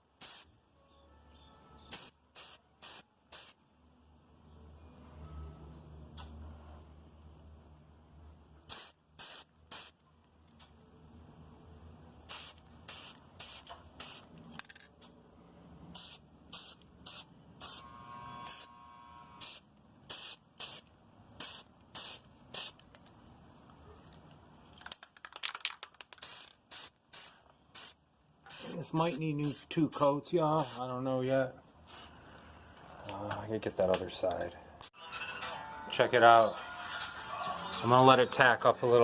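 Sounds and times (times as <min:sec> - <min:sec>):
spray paint can hissing: 0:00.2 - 0:00.5, 0:01.9 - 0:03.6, 0:08.7 - 0:10.0, 0:12.2 - 0:14.3, 0:15.9 - 0:17.8, 0:19.4 - 0:22.8, 0:26.1 - 0:30.8.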